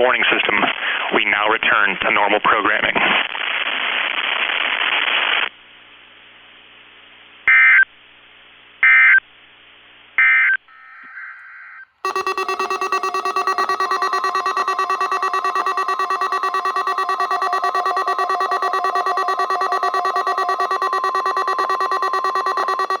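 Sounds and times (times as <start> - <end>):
digital code squawks: 12.1 - 23.0
pulsing buzzing alert tone: 12.1 - 23.0.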